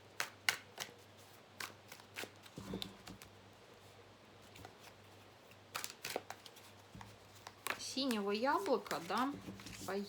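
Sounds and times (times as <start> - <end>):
cards being shuffled: 0.1 - 3.2, 4.6 - 10.0.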